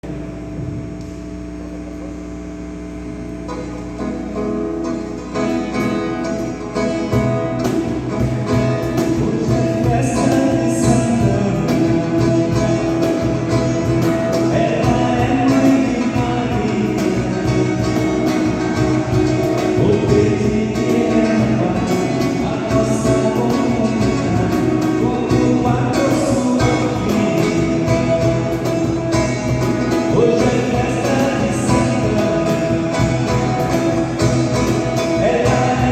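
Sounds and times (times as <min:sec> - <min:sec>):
guitar: 0:00.0 - 0:35.9
steady low beat: 0:06.8 - 0:35.9
voices singing a hymn: 0:09.0 - 0:35.9.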